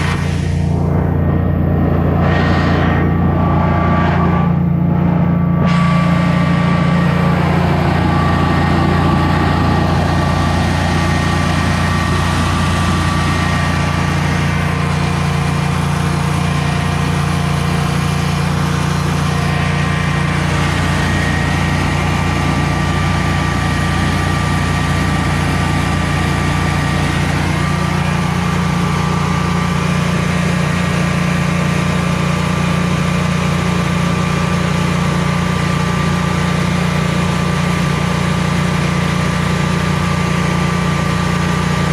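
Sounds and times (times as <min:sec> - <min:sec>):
thin whining tones: 0:00.0 - 0:29.9
generator engine humming: 0:00.0 - 0:41.9.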